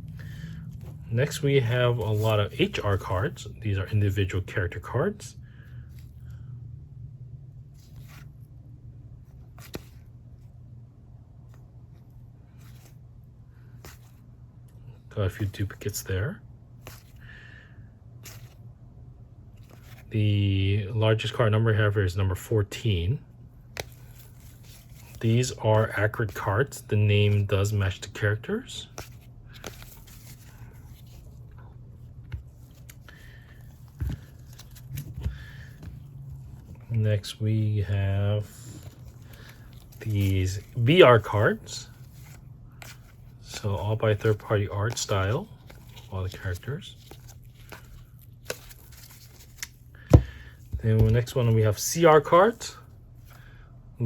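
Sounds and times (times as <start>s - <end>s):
low hum: 0.0s - 2.5s
low steady hum: 0.0s - 54.0s
cards sliding rustle: 0.1s - 4.2s, 7.8s - 8.5s, 9.2s - 10.5s, 11.4s - 13.0s, 13.6s - 16.0s, 16.8s - 17.2s, 18.2s - 18.7s, 19.5s - 20.1s, 23.6s - 37.0s, 37.8s - 52.6s.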